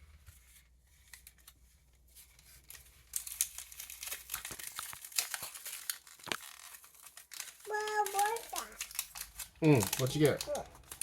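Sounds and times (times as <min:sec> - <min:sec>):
card pack wrapper tearing and crinkling: 0:00.9 - 0:11.0.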